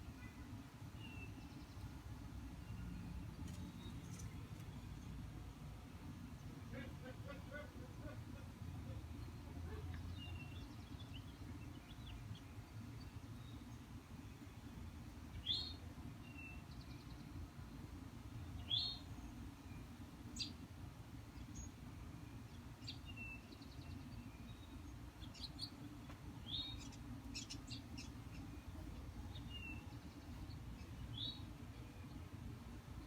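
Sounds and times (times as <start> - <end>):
faint low hum: 0.0 - 33.0
small birds chirping: 18.4 - 32.4.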